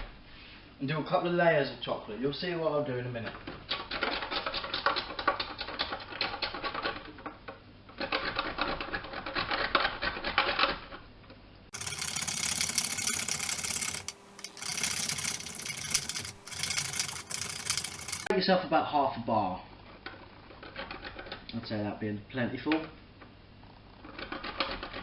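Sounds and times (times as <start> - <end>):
chocolate grated on metal grater: 11.7 - 18.3.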